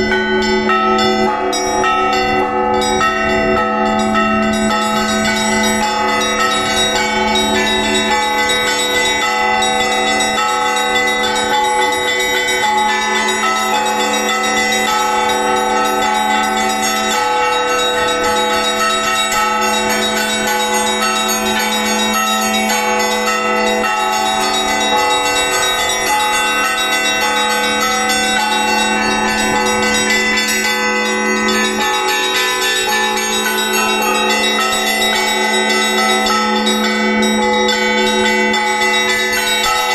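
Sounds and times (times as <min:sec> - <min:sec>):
church bells pealing: 0:00.0 - 0:39.9
deep bell humming: 0:00.0 - 0:39.9.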